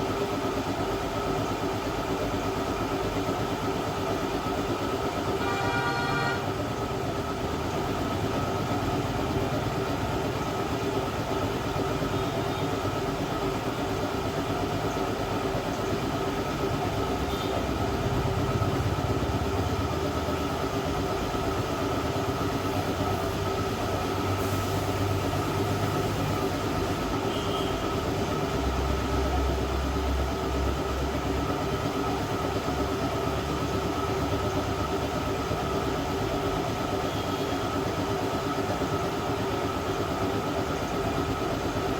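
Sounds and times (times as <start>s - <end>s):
hot-air welder blower whine: 2.4s - 28.9s.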